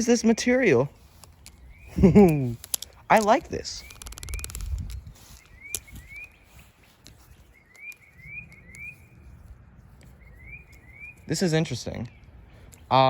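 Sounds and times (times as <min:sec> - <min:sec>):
short rising bird chirps: 0:03.8 - 0:11.5.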